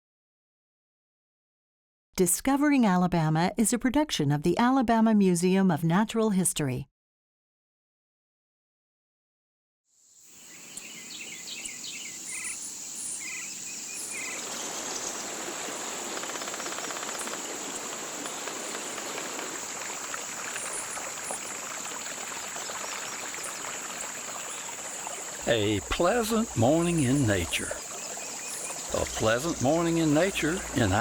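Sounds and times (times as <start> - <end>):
birds chirping: 10.5 - 15.3, 24.4 - 31.0
stream running water: 14.1 - 31.0
high-pitched insect drone: 25.2 - 31.0.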